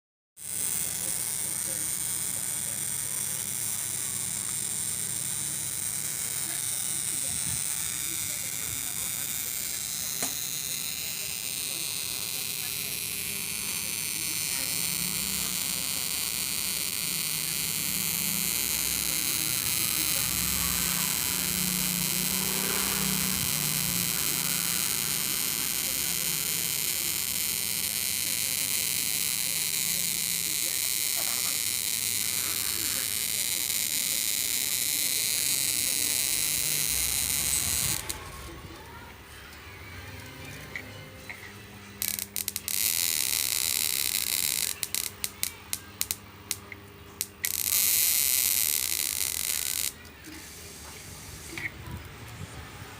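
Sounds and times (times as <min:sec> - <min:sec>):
television electrical hum: 0:00.4 - 0:52.9
high hissing whine: 0:00.5 - 0:38.9.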